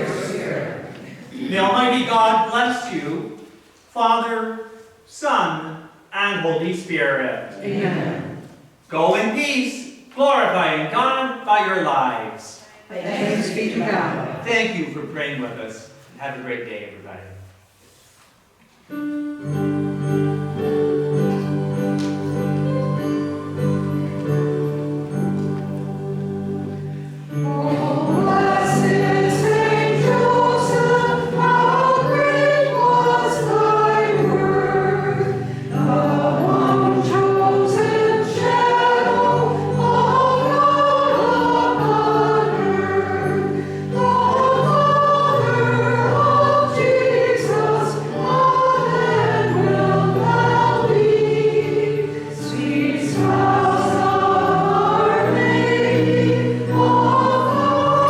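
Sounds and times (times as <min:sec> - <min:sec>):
choir singing a hymn: 0:00.0 - 0:02.9, 0:07.4 - 0:08.7, 0:12.9 - 0:14.7, 0:19.5 - 0:58.0.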